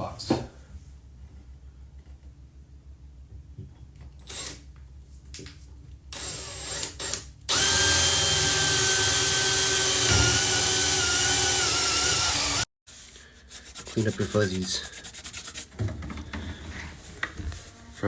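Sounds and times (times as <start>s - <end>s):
power drill whining: 6.2s - 12.7s.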